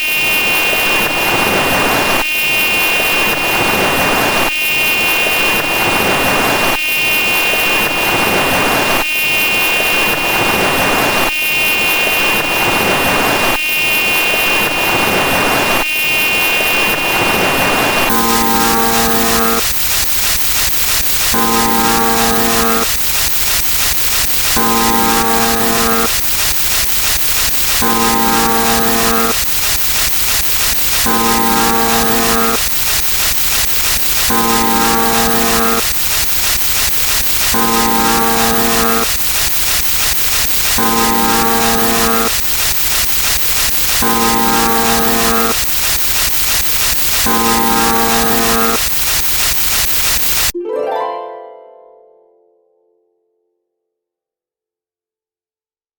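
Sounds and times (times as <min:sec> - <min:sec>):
high ringing tone: 0:18.1 - 0:50.6.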